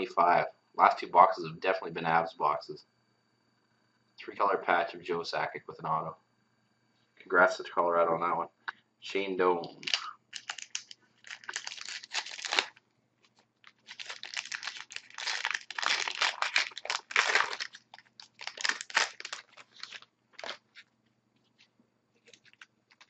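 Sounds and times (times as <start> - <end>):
cards being handled: 9.6 - 23.0
foil wrapper tearing and crinkling: 9.8 - 20.9, 22.2 - 23.0.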